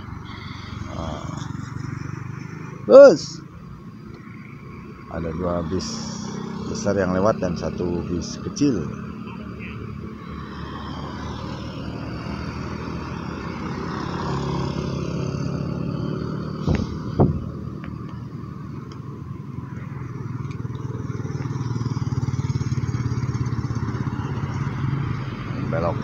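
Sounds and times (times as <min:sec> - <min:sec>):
motorcycle and vehicle engines: 0:00.0 - 0:26.0
sharp loud knocks: 0:16.6 - 0:17.5.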